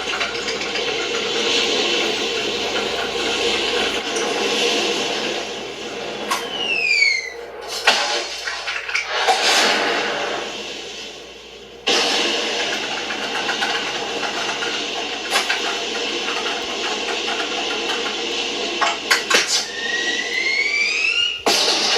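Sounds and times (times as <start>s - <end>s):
toy rocket roar: 11.8s - 21.9s.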